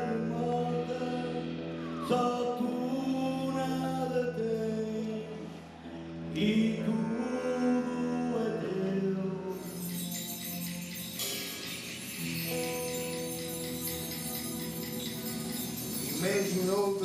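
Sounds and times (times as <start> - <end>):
bright jingling shimmer: 9.5 - 17.0.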